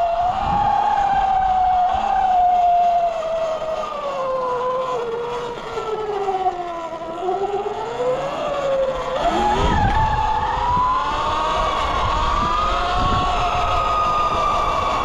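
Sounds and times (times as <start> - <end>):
wind rumble on microphone: 0.0 - 5.3, 8.4 - 15.0
electric motor whining: 0.0 - 15.0.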